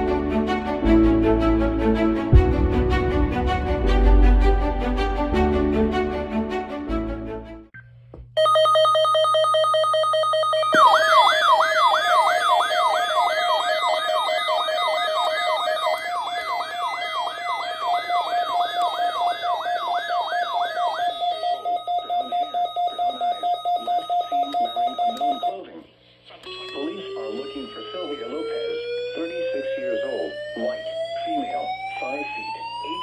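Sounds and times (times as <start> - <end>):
warbling siren alarm: 8.4 - 25.6, 26.4 - 33.0.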